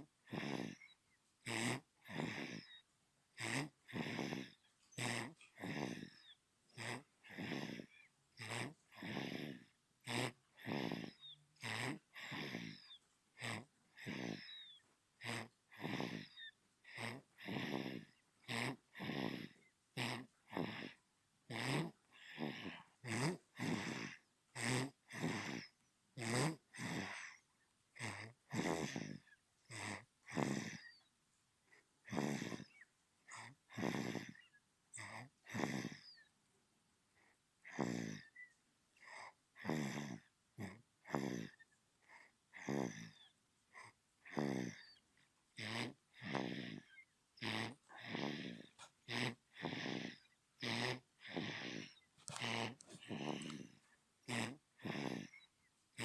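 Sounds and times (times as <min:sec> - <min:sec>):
baby snoring: 0:00.0 - 0:31.1, 0:31.7 - 0:36.3, 0:37.2 - 0:56.0.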